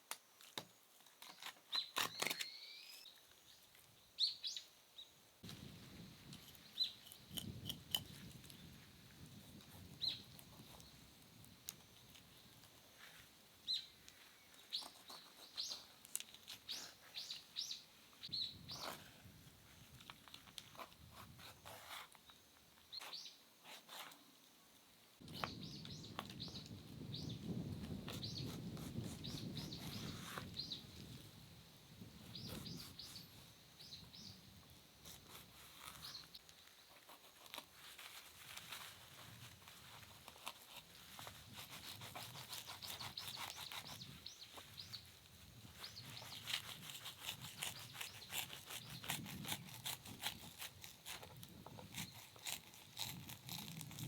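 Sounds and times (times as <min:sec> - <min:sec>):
faint outdoor background noise: 0:00.0 - 0:54.0
small birds chirping: 0:01.2 - 0:05.2, 0:06.4 - 0:08.9, 0:09.8 - 0:20.0, 0:21.4 - 0:23.4, 0:25.2 - 0:31.3, 0:32.0 - 0:37.0, 0:40.4 - 0:51.2.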